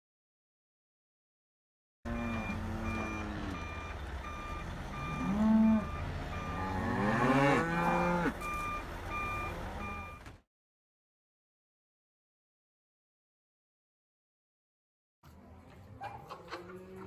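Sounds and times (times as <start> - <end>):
cattle mooing: 2.1 - 10.1, 15.7 - 17.0
electronic beep: 8.4 - 10.2.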